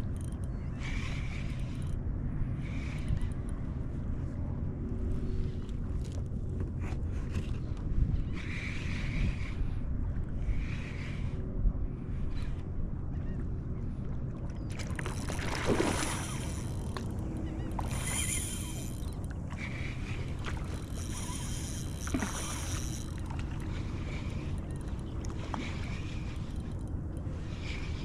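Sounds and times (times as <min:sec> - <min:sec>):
wind: 0:00.0 - 0:28.0
water noise: 0:13.8 - 0:28.0.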